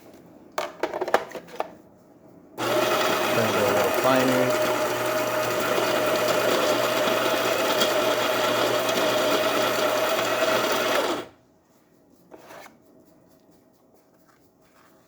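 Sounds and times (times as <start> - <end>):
coffee grinder motor whirring: 2.6 - 11.3.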